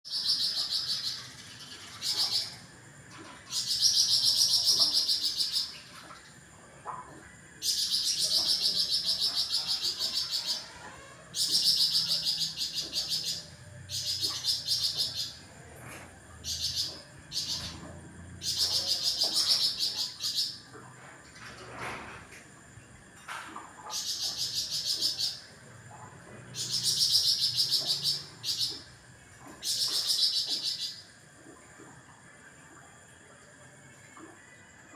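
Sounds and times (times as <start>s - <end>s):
songbird high rapid trill: 0.1s - 2.7s, 3.5s - 5.9s, 7.6s - 15.5s, 16.4s - 17.8s, 18.4s - 20.6s, 26.6s - 28.9s.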